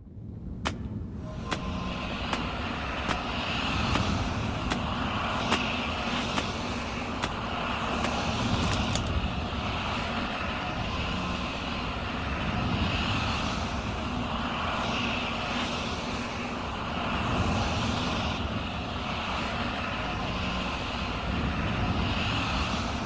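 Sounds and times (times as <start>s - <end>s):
low rumbling roar: 1.0s - 13.8s.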